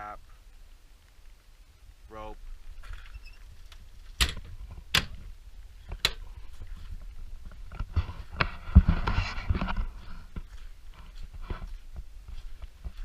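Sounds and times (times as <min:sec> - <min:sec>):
sharp knocks and clicks: 0:03.7 - 0:05.2, 0:05.9 - 0:06.2.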